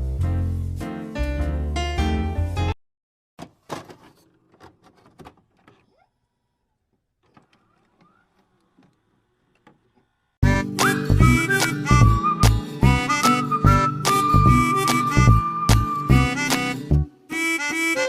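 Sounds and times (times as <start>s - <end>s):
music with harmonica: 10.4s - 18.0s.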